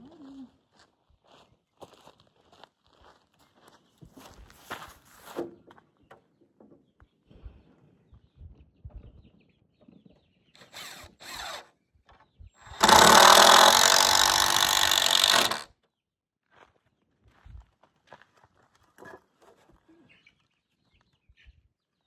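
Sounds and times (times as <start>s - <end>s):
power drill running: 10.6s - 11.7s, 12.6s - 15.7s.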